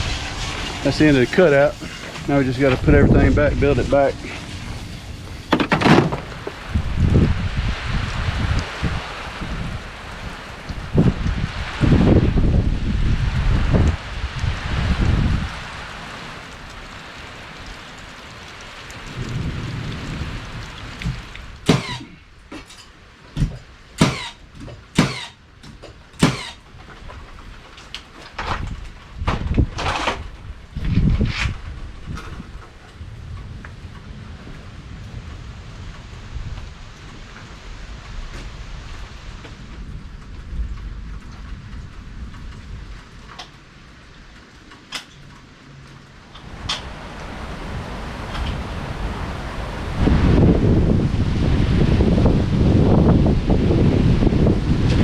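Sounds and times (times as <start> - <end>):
low rumble: 0.0 - 15.9
rain hissing: 0.0 - 24.5, 31.6 - 55.0.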